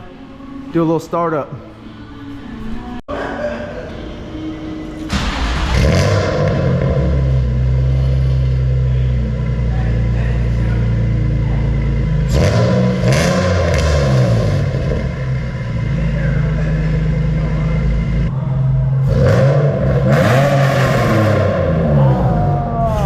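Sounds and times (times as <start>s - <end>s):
car engine idling: 3.7s - 23.0s
engine revving: 4.8s - 23.0s.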